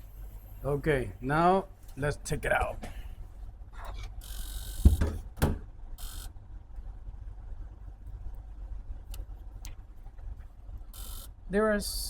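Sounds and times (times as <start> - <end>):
low machine hum: 0.0 - 12.0
knocks: 4.8 - 5.6.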